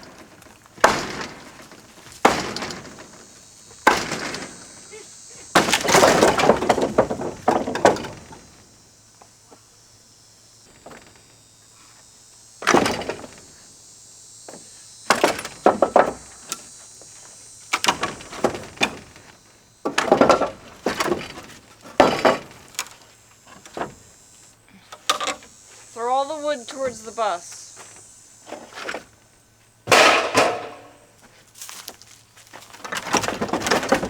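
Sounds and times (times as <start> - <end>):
wooden boards cracking and crashing: 0.0 - 8.8, 10.7 - 11.4, 12.6 - 13.7, 14.5 - 24.2, 29.8 - 34.0.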